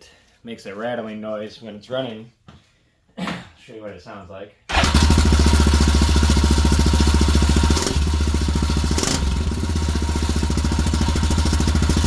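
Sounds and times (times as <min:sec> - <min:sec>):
atv engine running: 0:04.7 - 0:12.0.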